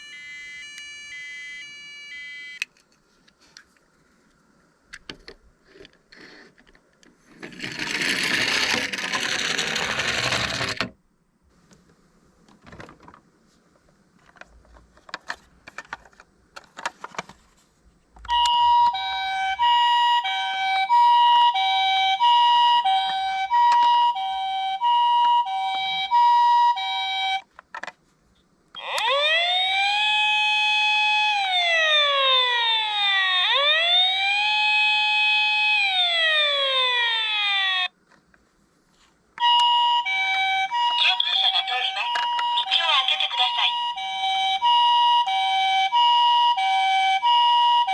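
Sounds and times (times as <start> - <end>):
electronic two-tone siren: 0.0 - 2.6, 18.3 - 27.4, 28.8 - 37.9, 39.4 - 47.9
electronic wailing siren: 0.0 - 2.6, 18.3 - 27.4, 28.8 - 37.9, 39.4 - 47.9.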